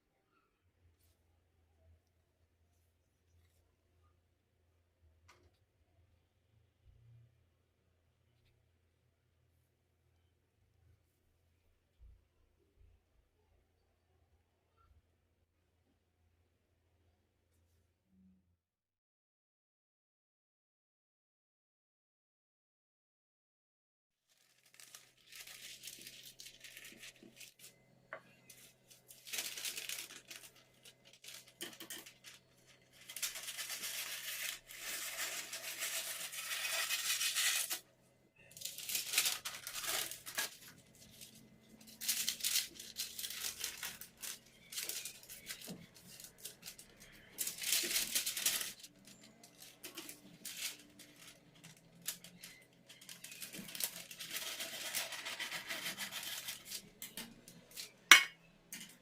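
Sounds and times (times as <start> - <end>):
rustling and scraping utensils: 24.5 - 37.8, 38.4 - 59.0.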